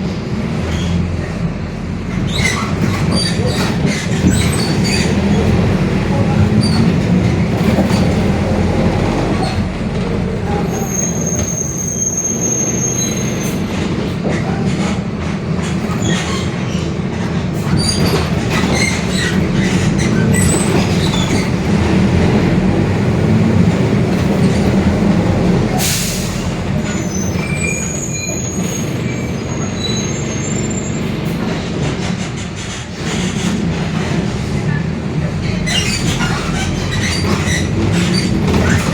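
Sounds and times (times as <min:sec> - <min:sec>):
bus body creaking and squeaking: 0:00.0 - 0:38.9
bus engine drone: 0:00.0 - 0:38.9.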